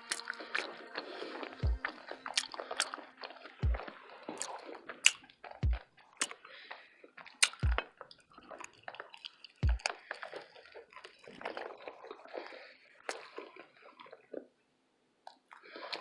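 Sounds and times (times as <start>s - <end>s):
mouth clicks and smacks: 0.0s - 0.8s, 1.4s - 12.5s, 15.2s - 16.0s
wet chewing: 0.0s - 14.6s, 15.2s - 16.0s
deep low thumps: 1.6s - 1.9s, 3.6s - 3.9s, 5.6s - 5.8s, 7.6s - 7.8s, 9.6s - 9.9s.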